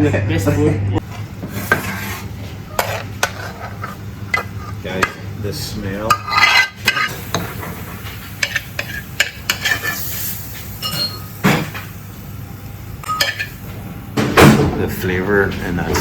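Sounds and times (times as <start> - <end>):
food sizzling in a pan: 1.4 - 13.8
metal utensil scraping a pan: 1.5 - 5.2, 6.1 - 7.7, 8.4 - 10.2
metallic rings: 10.8 - 11.3.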